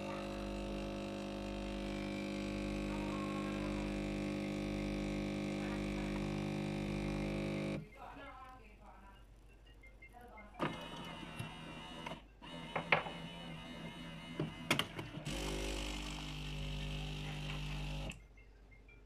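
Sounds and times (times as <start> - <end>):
coffee machine hum: 0.0 - 7.8, 10.7 - 18.2
coffee machine running: 0.0 - 7.8, 10.6 - 18.2.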